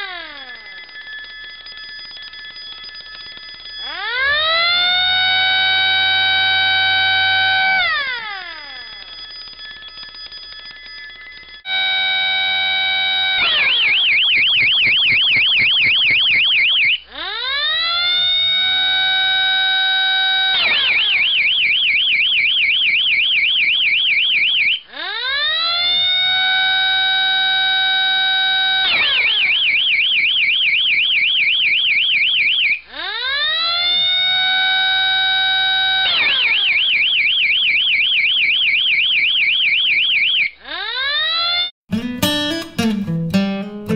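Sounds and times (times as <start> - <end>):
alarm bell warbling ring: 0.0 - 17.0
rising siren tone: 3.8 - 9.2, 11.7 - 40.1.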